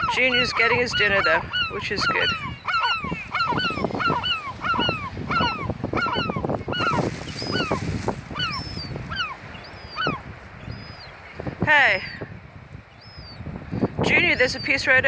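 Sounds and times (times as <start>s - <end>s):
gulls calling: 0.0s - 12.0s.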